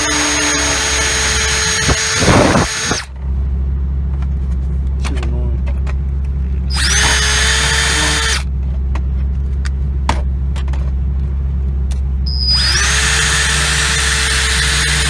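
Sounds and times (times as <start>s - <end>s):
rotary tool cutting plastic: 0.0s - 3.1s, 6.7s - 8.5s, 12.3s - 15.0s.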